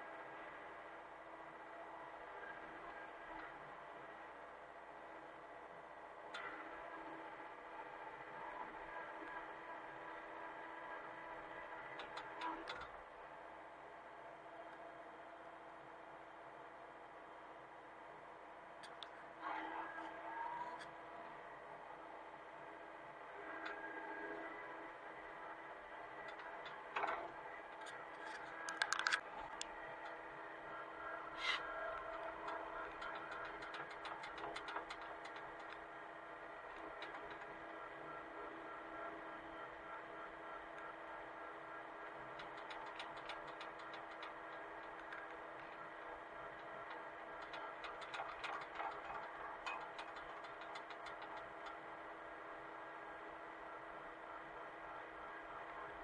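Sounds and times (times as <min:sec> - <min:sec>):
excavator engine running: 0:00.0 - 0:56.0
rapid light ticking and clattering: 0:10.2 - 0:13.1, 0:25.2 - 0:56.0.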